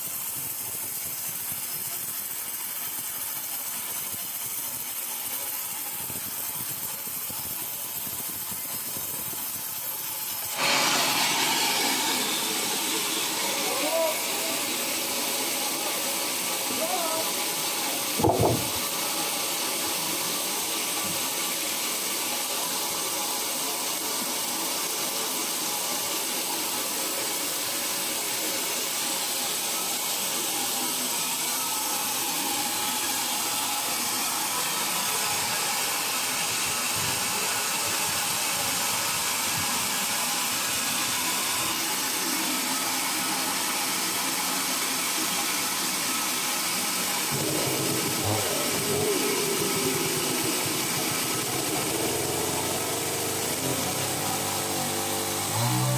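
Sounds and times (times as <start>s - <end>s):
hissing machine noise: 0.9s - 55.9s
loud knock: 18.2s - 18.8s.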